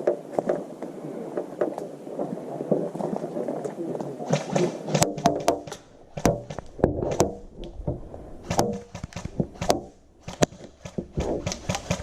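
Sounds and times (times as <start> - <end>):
airsoft guns firing: 4.3 - 7.5, 8.4 - 12.0
pellets striking hard surfaces: 8.5 - 12.0.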